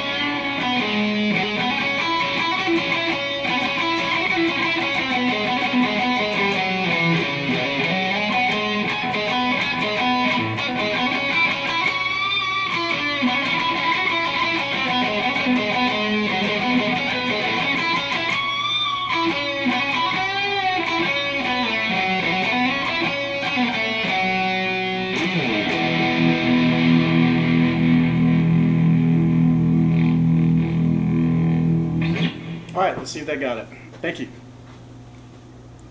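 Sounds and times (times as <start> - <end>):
electric guitar riff: 0.0 - 33.0.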